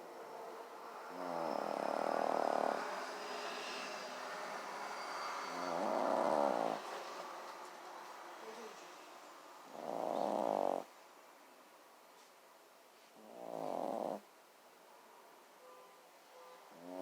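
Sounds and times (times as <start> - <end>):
dog snoring: 1.1 - 3.0, 5.5 - 6.8, 9.7 - 10.9, 13.2 - 14.3, 16.7 - 17.0.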